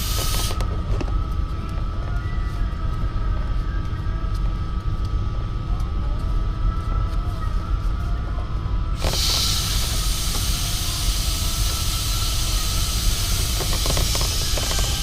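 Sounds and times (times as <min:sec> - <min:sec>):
refrigerant gas hissing: 0:00.0 - 0:00.7, 0:08.9 - 0:15.0
steady low rumble: 0:00.0 - 0:15.0.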